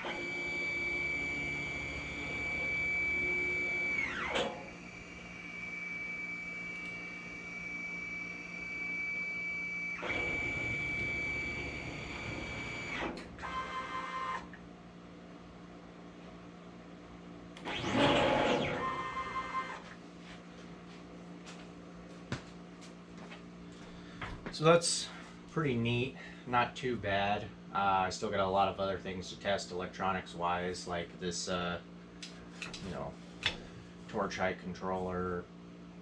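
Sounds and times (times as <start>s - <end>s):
stepper motors whining: 0.0s - 14.6s, 17.6s - 19.9s.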